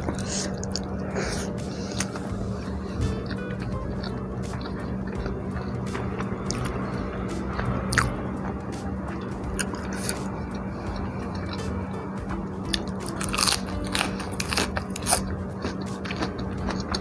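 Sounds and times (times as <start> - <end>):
chewing with wet mouth clicks: 0.0 - 0.9, 12.7 - 17.0
crisp bites: 12.7 - 16.9.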